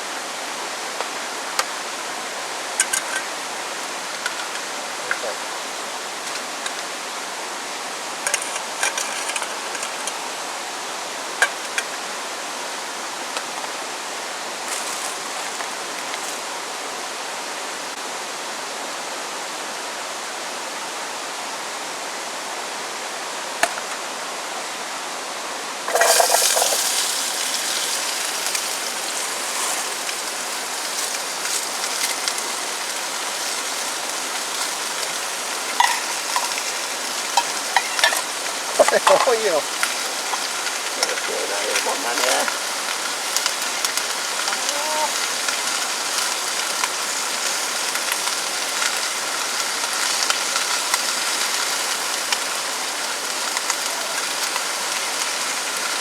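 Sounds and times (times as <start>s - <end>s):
steady hiss: 0.0s - 56.0s
utensils clinking: 25.9s - 27.1s, 35.6s - 42.5s
food sizzling in a pan: 25.9s - 56.0s.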